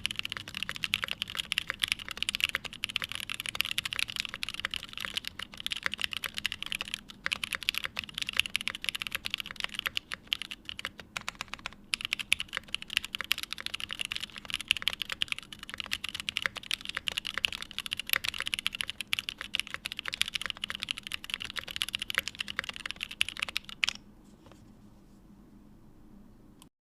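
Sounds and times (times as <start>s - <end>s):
mechanical keyboard typing: 0.0s - 24.0s.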